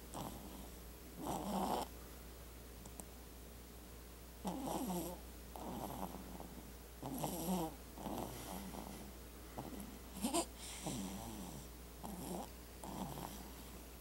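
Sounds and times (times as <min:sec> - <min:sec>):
person snoring: 0:07.0 - 0:13.5.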